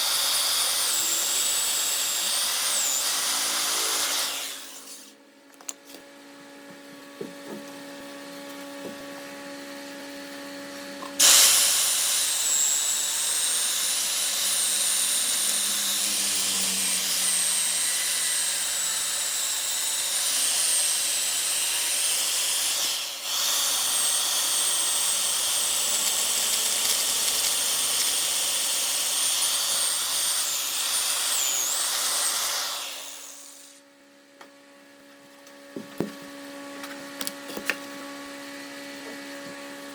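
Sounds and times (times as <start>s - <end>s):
lathe tool cutting wood hiss: 11.2s - 18.8s.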